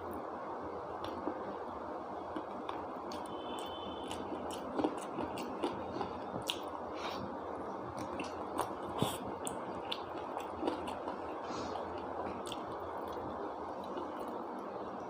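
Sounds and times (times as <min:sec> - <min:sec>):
person chewing with mouth smacks: 0:02.3 - 0:07.3, 0:08.0 - 0:14.4.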